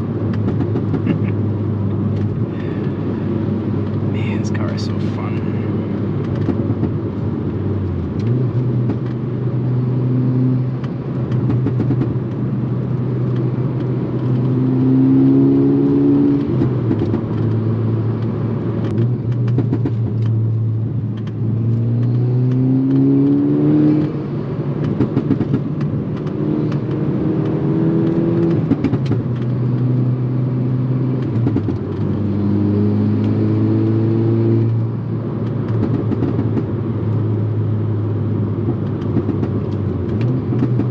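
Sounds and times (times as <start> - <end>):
car engine revving: 0.0 - 40.9.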